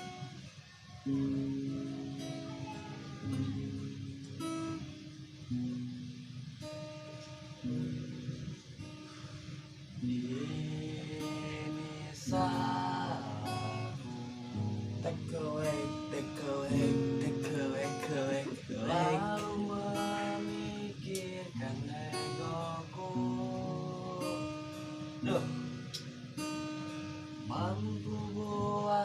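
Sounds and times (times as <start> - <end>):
acoustic guitar strumming: 0.0 - 29.0.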